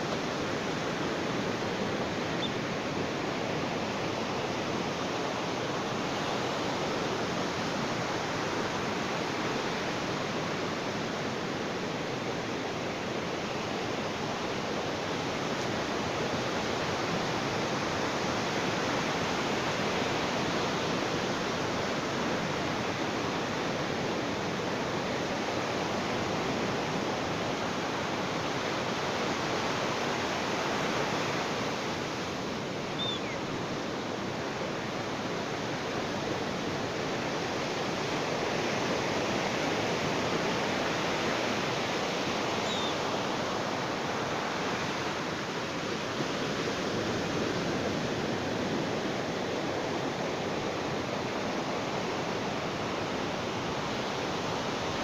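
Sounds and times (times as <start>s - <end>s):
waves washing onto beach: 0.0s - 55.0s
faint high chirps: 33.0s - 33.4s.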